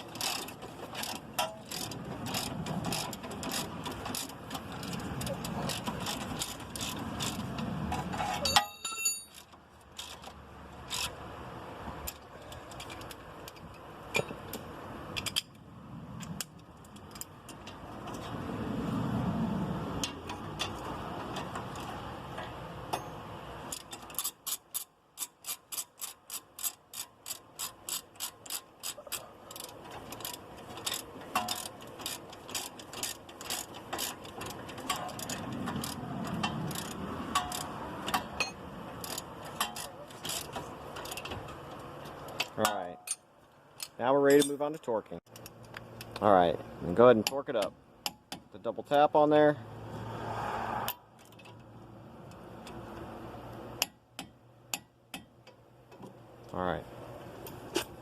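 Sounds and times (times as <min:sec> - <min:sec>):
ratchet wrench clicking: 0:00.1 - 0:11.2, 0:23.7 - 0:43.2.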